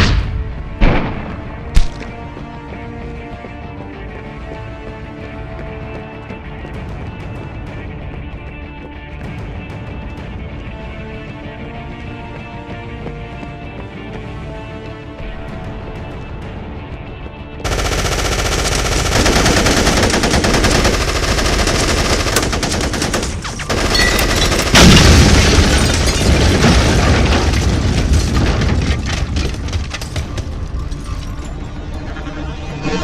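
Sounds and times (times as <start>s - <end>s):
rapid automatic gunfire: 17.7s - 25.4s.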